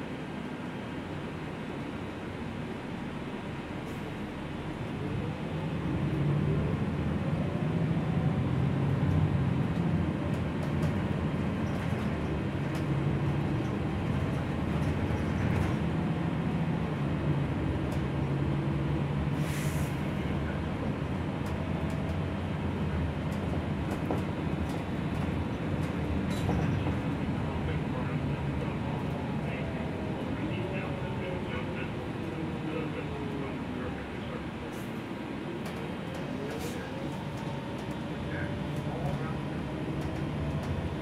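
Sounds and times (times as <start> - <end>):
bus engine hum: 0.0 - 41.0
short air hiss: 19.4 - 20.0.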